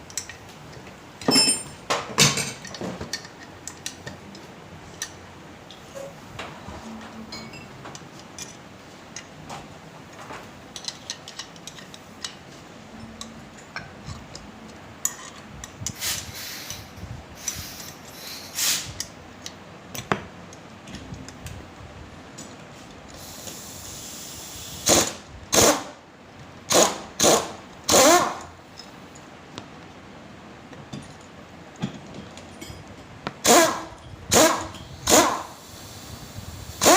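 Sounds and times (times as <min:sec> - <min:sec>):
short hiss: 0:16.0 - 0:19.0, 0:23.2 - 0:25.1, 0:35.0 - 0:36.9
power tool bursts: 0:24.0 - 0:25.9, 0:26.7 - 0:28.4, 0:33.4 - 0:35.7.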